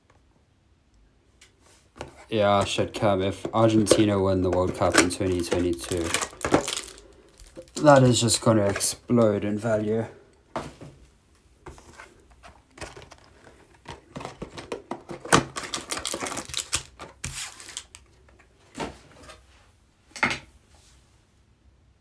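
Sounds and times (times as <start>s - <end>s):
packaging clicking and crinkling: 2.0s - 9.4s, 11.8s - 18.1s.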